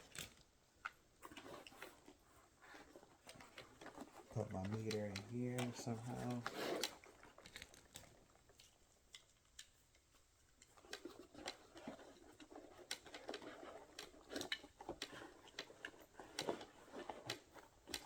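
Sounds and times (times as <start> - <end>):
hand tools clicking and tapping: 4.4 - 7.6.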